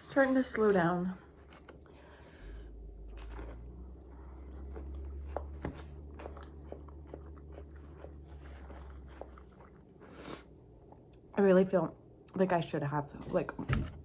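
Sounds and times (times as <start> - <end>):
steady low hum: 0.0 - 14.0
crunchy chewing: 2.9 - 11.2.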